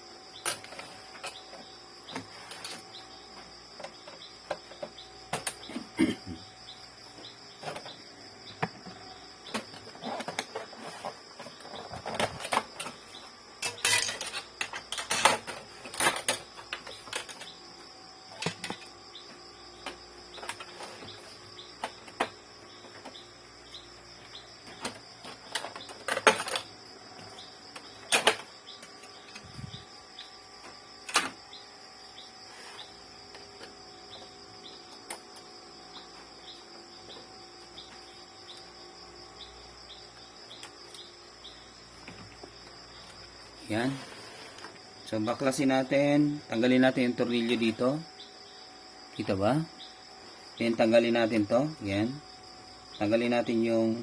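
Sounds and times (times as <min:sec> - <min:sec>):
printer parts clicking and clattering: 0:11.4 - 0:17.6, 0:24.6 - 0:29.5.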